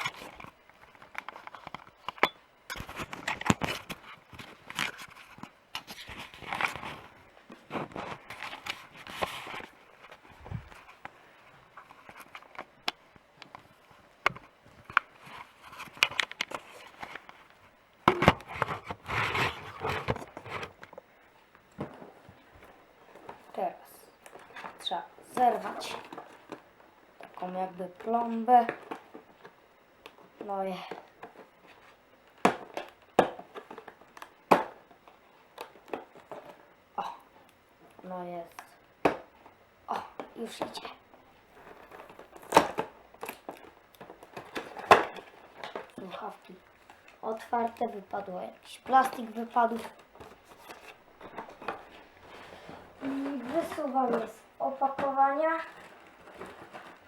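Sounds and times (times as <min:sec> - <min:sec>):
cardboard and plastic clicks: 0:00.0 - 0:23.4, 0:41.6 - 0:47.9
packaging rustling and scraping: 0:00.0 - 0:29.6, 0:40.4 - 0:57.0.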